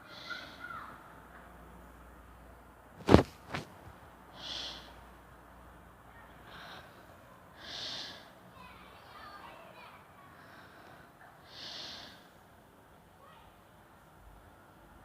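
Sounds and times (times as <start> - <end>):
person breathing softly: 4.3 - 5.1, 6.4 - 8.4, 10.3 - 12.4.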